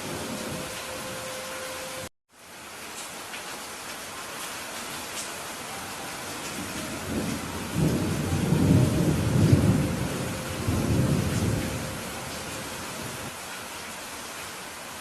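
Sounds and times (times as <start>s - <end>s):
heavy rain hiss: 0.0s - 15.0s
thunder rumbling: 6.4s - 13.3s.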